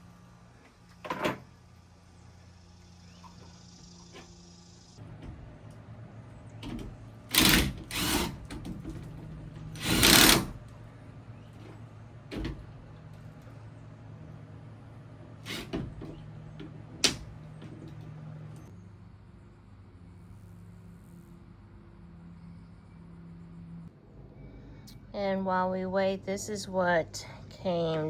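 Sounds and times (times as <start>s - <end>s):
power drill driving screws: 7.3s - 8.5s, 9.8s - 10.6s.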